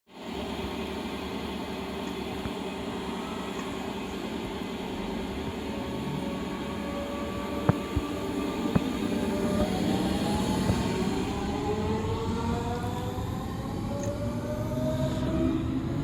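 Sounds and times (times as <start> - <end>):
train mechanical hum: 0.1 - 16.0
faint steady whine: 0.2 - 11.6.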